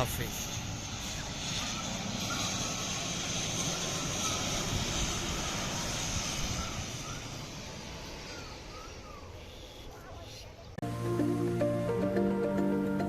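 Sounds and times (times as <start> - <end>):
turboprop airplane drone: 0.0 - 10.0.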